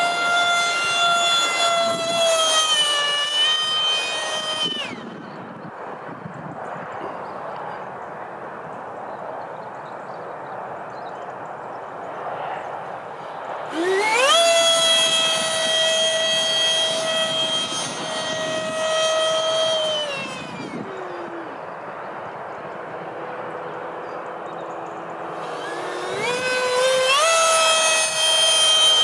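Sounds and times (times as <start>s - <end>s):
electric jet fan whine: 0.0s - 6.7s, 13.0s - 29.0s.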